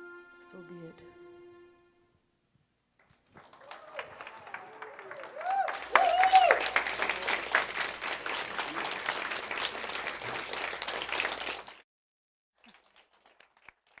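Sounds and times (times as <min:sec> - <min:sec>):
audience applauding: 0:03.0 - 0:11.8, 0:12.6 - 0:14.0.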